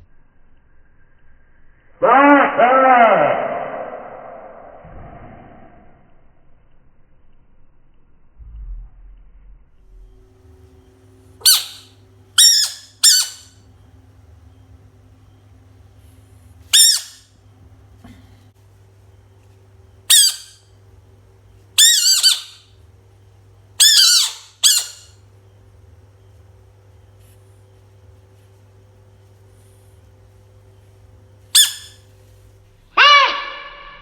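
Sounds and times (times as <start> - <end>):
frog screaming: 2.0 - 4.3, 11.4 - 13.5, 16.8 - 17.2, 20.1 - 20.6, 21.8 - 22.6, 23.8 - 25.1, 31.6 - 32.0, 33.0 - 34.0
steady low hum: 5.7 - 34.0.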